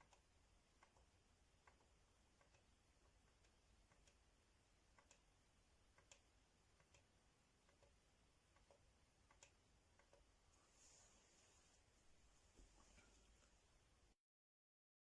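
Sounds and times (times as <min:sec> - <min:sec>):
faint clicks: 0:00.0 - 0:04.2, 0:04.9 - 0:05.3, 0:05.9 - 0:10.3.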